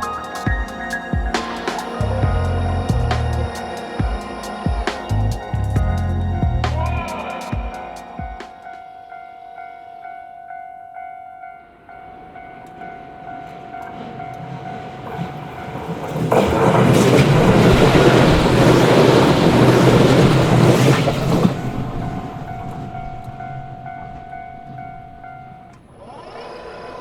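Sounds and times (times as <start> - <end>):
crossing warning bell ringing: 0.0 - 27.0
electric train passing: 0.0 - 27.0
wheels clickety-clack: 13.5 - 27.0.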